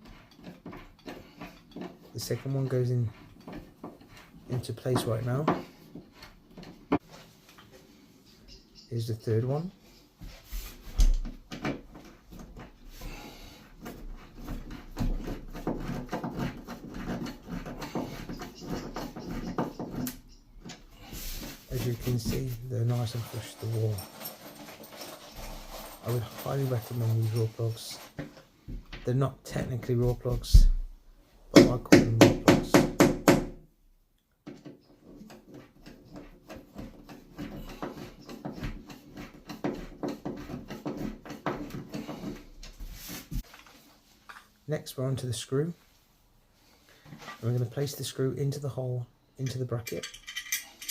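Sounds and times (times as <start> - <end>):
wall anchor scraping into plasterboard: 0.0 - 7.4, 10.2 - 28.5, 34.4 - 44.4.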